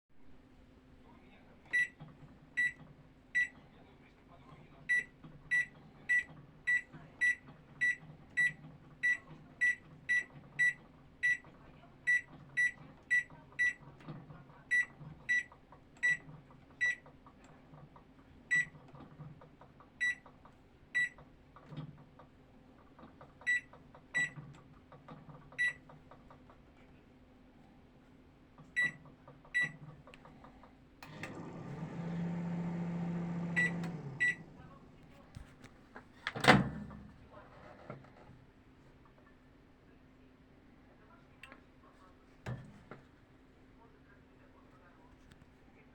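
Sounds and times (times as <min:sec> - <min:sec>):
microwave control panel beeping: 0:01.7 - 0:02.0, 0:02.6 - 0:02.8, 0:04.9 - 0:11.4, 0:28.8 - 0:29.0, 0:29.6 - 0:29.8, 0:31.0 - 0:35.1
faint low hum: 0:26.7 - 0:45.9.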